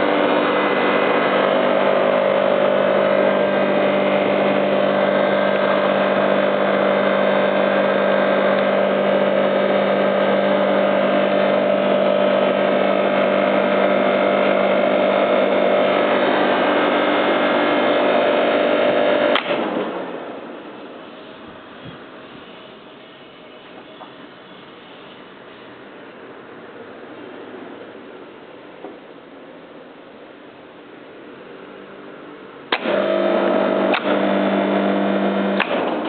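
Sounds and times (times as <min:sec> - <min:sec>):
air compressor humming: 0:00.0 - 0:29.2, 0:30.9 - 0:36.0.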